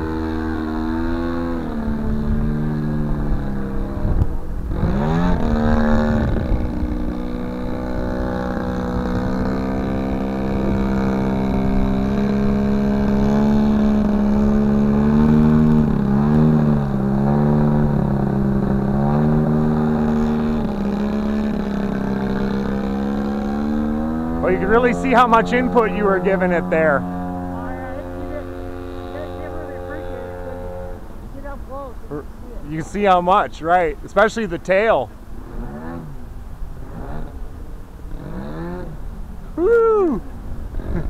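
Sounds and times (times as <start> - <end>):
model airplane engine: 0.0 - 4.6, 5.5 - 32.0.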